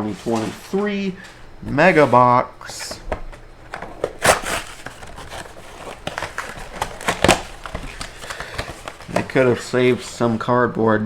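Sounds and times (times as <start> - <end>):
cardboard and wrapping rustling: 0.0 - 11.0
loud ripping: 4.0 - 10.2.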